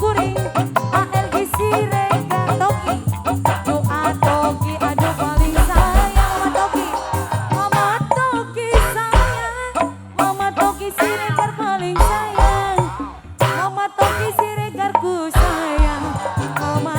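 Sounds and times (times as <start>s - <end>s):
drums beating: 0.0s - 11.4s, 12.0s - 14.4s, 15.4s - 16.9s
wavering melodic lead: 0.0s - 14.7s.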